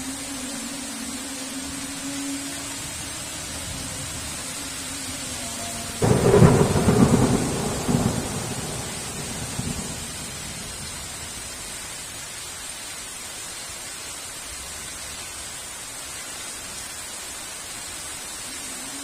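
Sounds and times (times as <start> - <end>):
heavy rain falling: 0.0 - 19.0
thunder rumble: 5.9 - 11.7.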